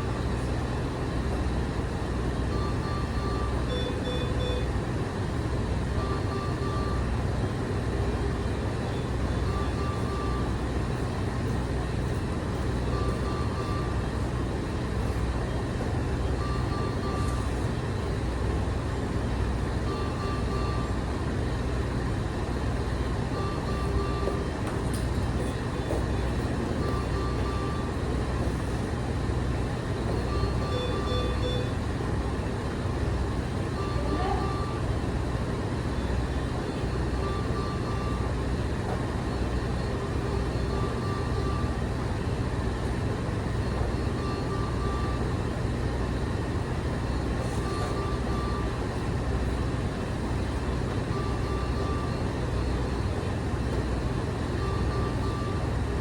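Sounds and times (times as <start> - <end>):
short electronic beeps: 2.5 - 4.7, 30.2 - 31.8.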